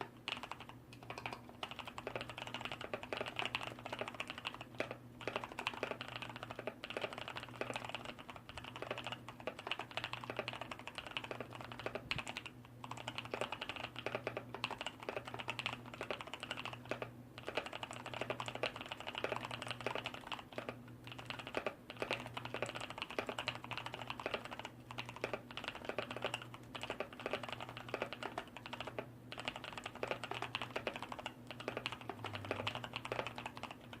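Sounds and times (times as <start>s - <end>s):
mechanical keyboard typing: 0.0s - 34.0s.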